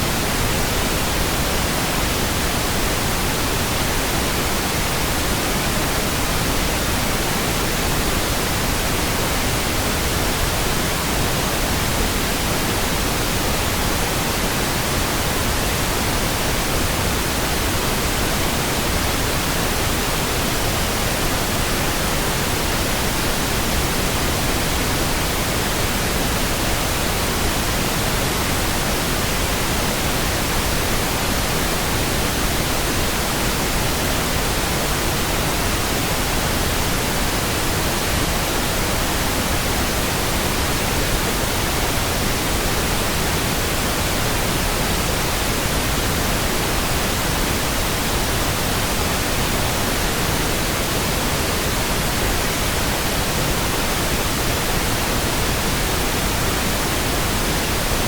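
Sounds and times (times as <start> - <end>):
synthetic pink noise hiss: 0.0 - 58.0.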